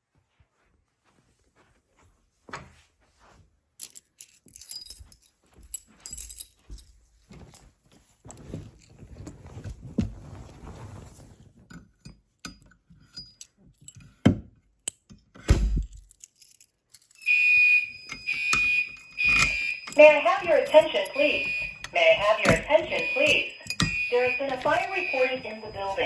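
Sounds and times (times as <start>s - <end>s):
rustling and handling noises: 0.1s - 12.0s, 18.2s - 26.0s
fire alarm pulsing alert tone: 17.2s - 26.0s.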